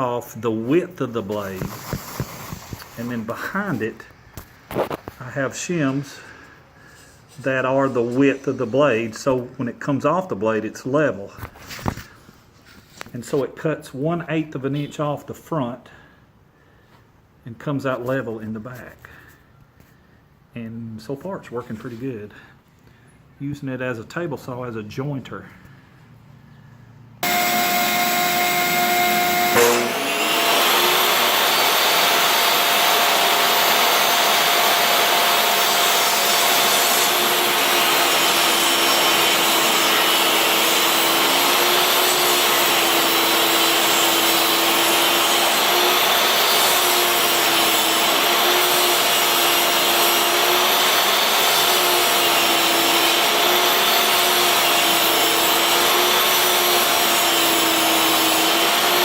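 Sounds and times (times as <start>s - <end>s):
table saw cutting board: 0.6s - 5.1s, 7.4s - 9.5s, 27.2s - 59.0s.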